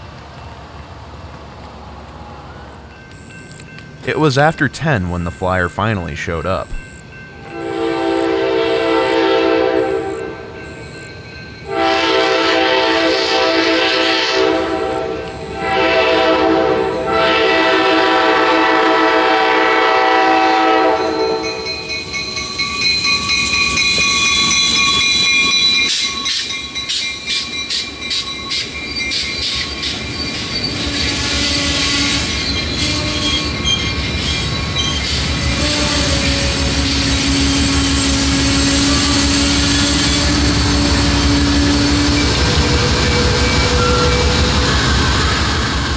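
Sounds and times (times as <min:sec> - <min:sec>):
locomotive horn: 0:01.7 - 0:02.9, 0:07.3 - 0:10.5, 0:11.6 - 0:21.7, 0:30.8 - 0:33.5, 0:35.5 - 0:45.8
train wheels clattering: 0:20.9 - 0:45.9
wheels squealing: 0:21.0 - 0:45.9.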